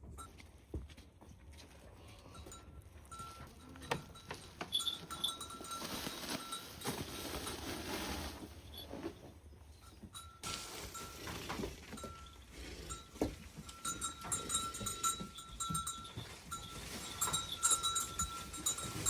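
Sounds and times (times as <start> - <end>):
livestock moving about: 0.0 - 19.0
clinks: 2.4 - 7.2, 8.8 - 19.0
bell-like tone: 13.0 - 19.0.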